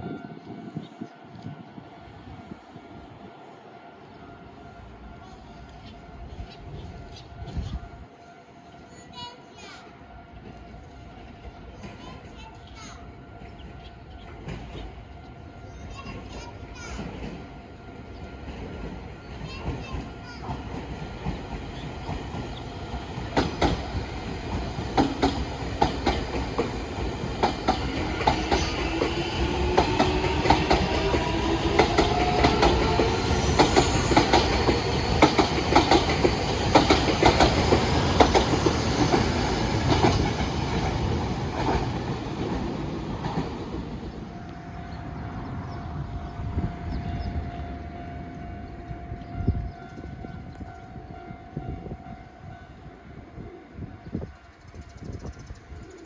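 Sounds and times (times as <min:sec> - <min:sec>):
electric train whine: 0:00.0 - 0:56.0
wheels clicking over rail joints: 0:19.4 - 0:42.6.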